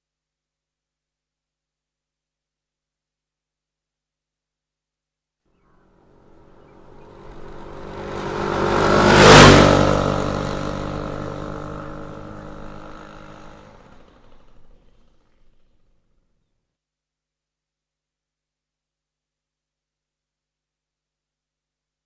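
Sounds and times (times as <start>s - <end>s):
motorcycle passing by: 5.6s - 16.3s.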